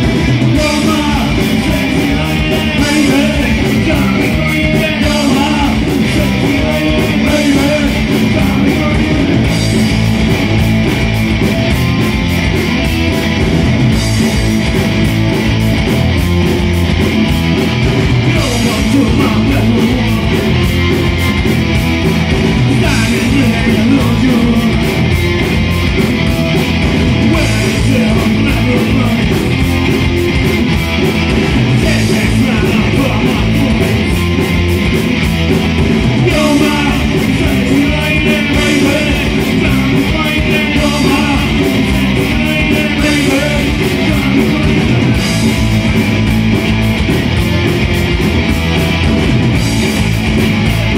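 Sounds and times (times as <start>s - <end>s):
electric guitar: 0.0s - 50.9s
steady drum beat: 0.0s - 50.9s
person singing: 0.5s - 9.6s, 18.2s - 20.8s, 22.7s - 25.0s, 27.2s - 29.6s, 31.7s - 34.4s, 36.2s - 45.4s.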